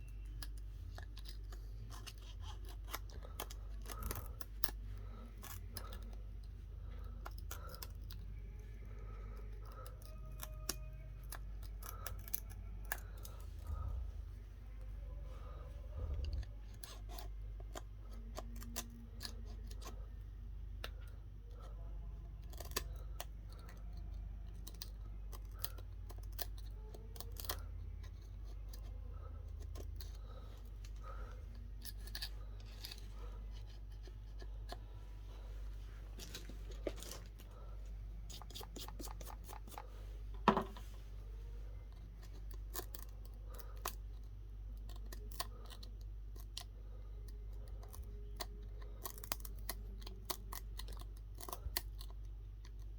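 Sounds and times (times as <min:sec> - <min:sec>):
steady low hum: 0:00.0 - 0:52.9.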